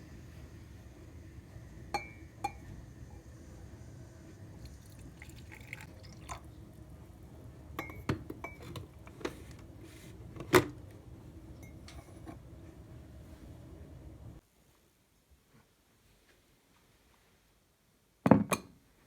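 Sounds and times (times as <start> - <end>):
glassware and dishes clinking: 7.8 - 8.8.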